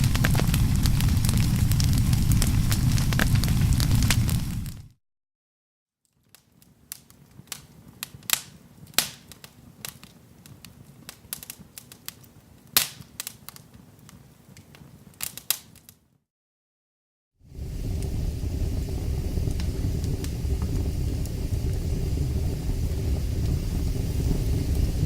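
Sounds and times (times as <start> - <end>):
faint low rumble: 0.0 - 4.9, 17.5 - 25.0
fire crackling: 0.0 - 4.9, 6.3 - 16.0, 17.5 - 25.0.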